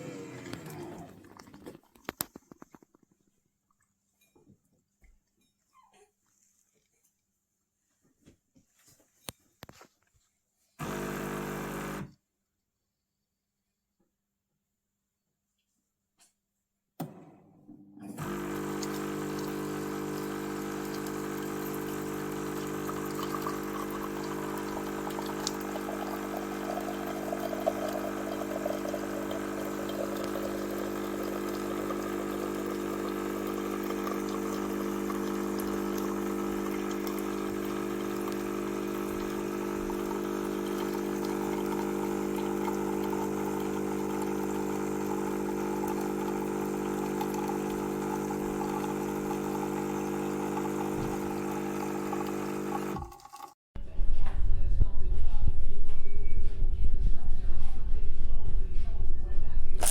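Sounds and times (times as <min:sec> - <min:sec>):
coffee machine humming: 0:00.0 - 0:01.7, 0:10.8 - 0:12.2, 0:17.0 - 0:53.4.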